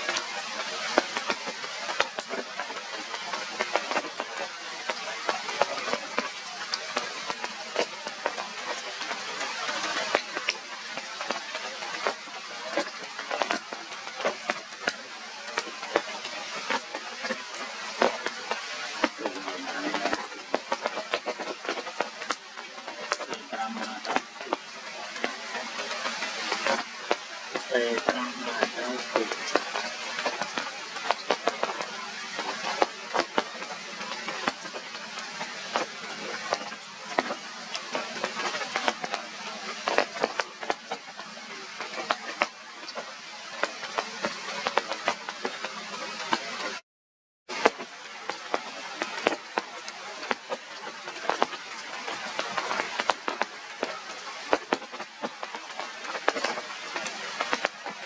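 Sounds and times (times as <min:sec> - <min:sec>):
steady rain hissing: 0:00.0 - 0:46.8, 0:47.5 - 0:58.0
drops ticking on hard surface: 0:01.0 - 0:02.3, 0:03.6 - 0:04.2, 0:07.0 - 0:07.9, 0:28.0 - 0:31.9, 0:57.5 - 0:57.8.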